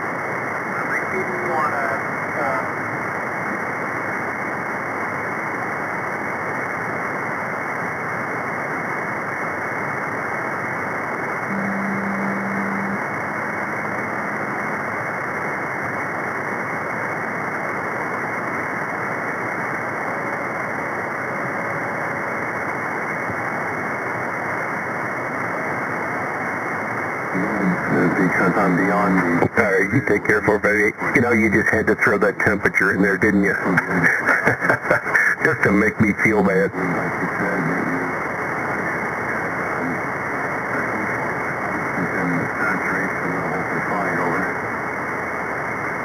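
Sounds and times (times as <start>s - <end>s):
radio static hiss: 0.0s - 46.0s
low heterodyne tone: 11.5s - 14.9s.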